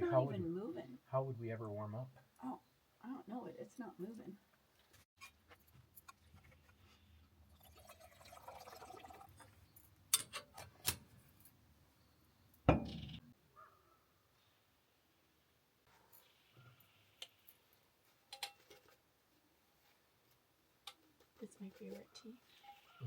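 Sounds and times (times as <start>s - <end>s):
tea pouring into cup: 7.5s - 9.6s.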